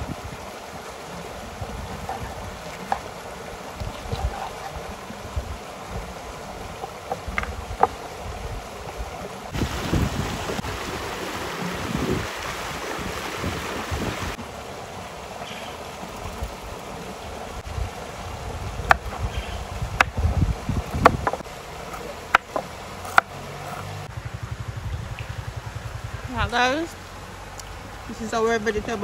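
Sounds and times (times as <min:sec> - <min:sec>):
wind buffeting microphone: 0:00.0 - 0:14.4, 0:17.3 - 0:21.5
river water flowing: 0:00.0 - 0:29.0.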